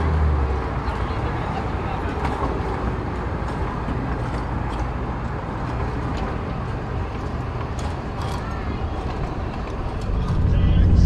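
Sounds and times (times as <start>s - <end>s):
miniature train rumbling: 5.8s - 11.0s.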